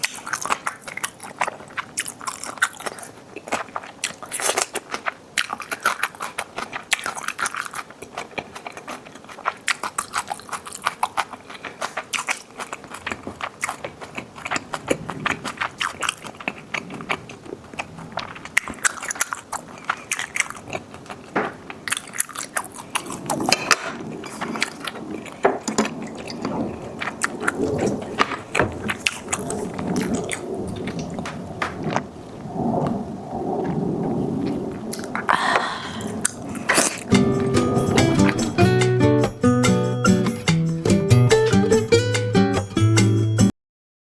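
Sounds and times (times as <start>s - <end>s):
person biting and chewing food: 0.0s - 31.2s, 36.2s - 41.2s
wet clicks and crunches: 0.0s - 33.0s, 34.4s - 35.3s.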